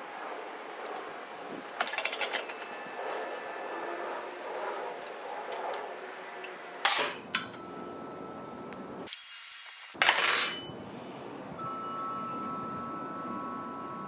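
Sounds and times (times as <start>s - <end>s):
metal clanking: 0.8s - 3.4s, 5.0s - 7.6s.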